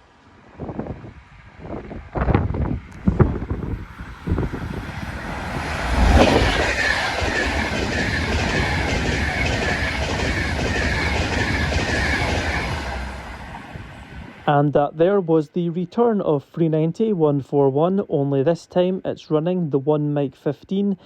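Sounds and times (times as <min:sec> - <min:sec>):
electric train passing: 0:00.0 - 0:16.3
train wheels clattering over rail joints: 0:05.5 - 0:13.6.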